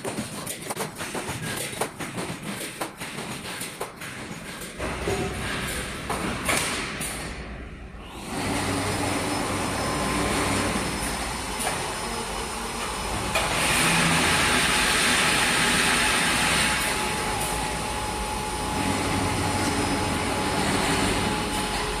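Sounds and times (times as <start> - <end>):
welding machine running: 8.0 - 22.0.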